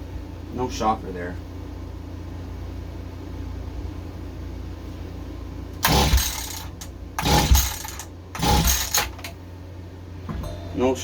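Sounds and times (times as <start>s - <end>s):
recoil starter rope pulls: 5.8s - 9.3s.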